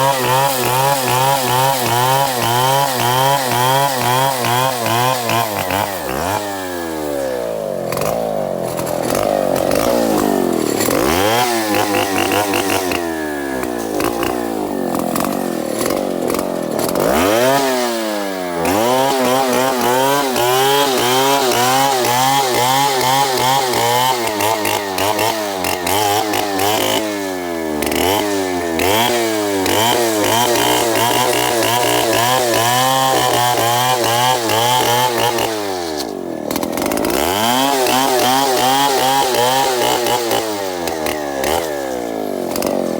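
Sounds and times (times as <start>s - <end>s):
chainsaw cutting timber: 0.0s - 42.9s.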